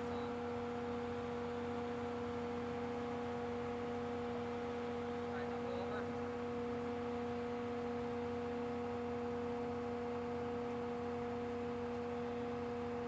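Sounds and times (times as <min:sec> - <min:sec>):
excavator engine drone: 0:00.0 - 0:13.0.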